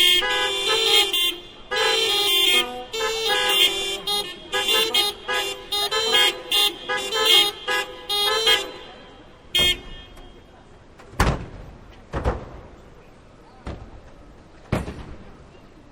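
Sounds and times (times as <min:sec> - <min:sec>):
car horns honking: 0:00.0 - 0:10.7.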